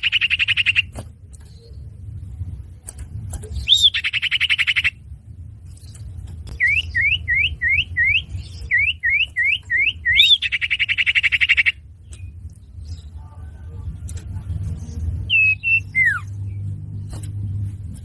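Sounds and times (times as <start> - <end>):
low steady hum: 0.0 - 18.0
bird whistling upward notes: 6.5 - 12.3, 15.3 - 16.4.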